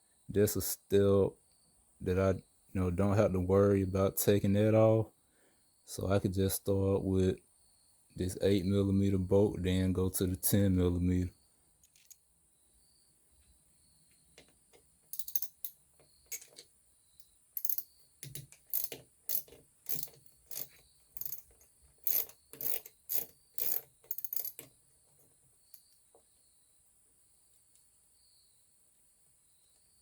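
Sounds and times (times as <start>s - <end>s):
ratchet wrench clicking: 15.1s - 16.5s, 17.6s - 24.7s.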